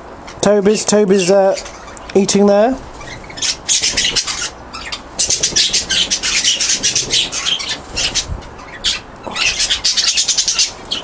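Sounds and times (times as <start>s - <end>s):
small birds chirping: 0.2s - 11.0s.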